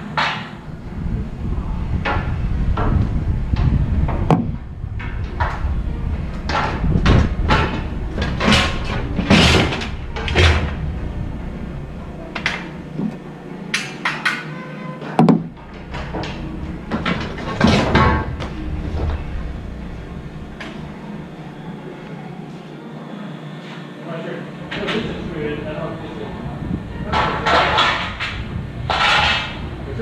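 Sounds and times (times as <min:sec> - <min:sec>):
low rumble: 0:00.6 - 0:13.7, 0:15.4 - 0:21.7
scrap metal clanking: 0:27.1 - 0:29.7.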